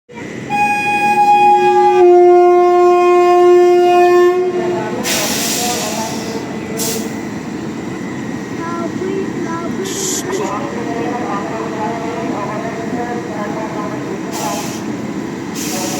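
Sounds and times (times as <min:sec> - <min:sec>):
train rumble: 0:00.1 - 0:15.9
locomotive horn: 0:00.4 - 0:04.8
air hissing: 0:05.0 - 0:07.3, 0:09.8 - 0:10.5, 0:14.3 - 0:15.9.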